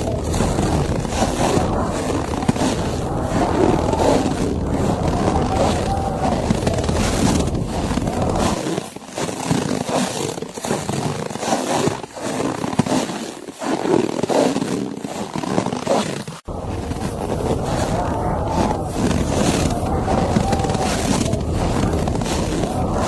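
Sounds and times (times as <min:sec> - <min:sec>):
blizzard wind rushing: 0:00.0 - 0:08.6, 0:16.5 - 0:23.0
deep wind rumble: 0:00.0 - 0:08.6, 0:16.5 - 0:23.0.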